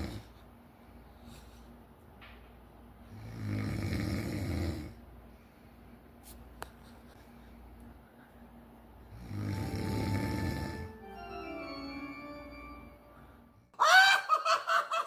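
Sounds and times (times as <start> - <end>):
person snoring: 3.1 - 5.0, 9.1 - 11.0
loud cry of a voice: 13.8 - 14.5.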